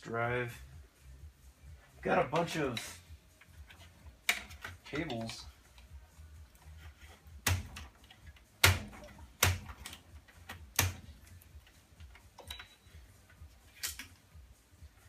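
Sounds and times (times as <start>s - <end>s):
clicks inside computer case: 8.6s - 11.1s.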